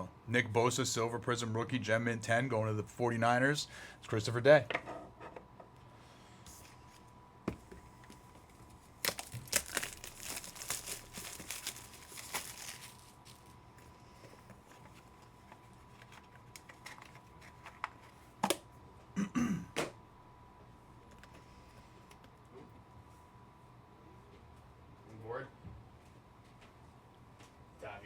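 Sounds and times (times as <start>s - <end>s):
wrappers tearing and crinkling: 8.7s - 13.6s.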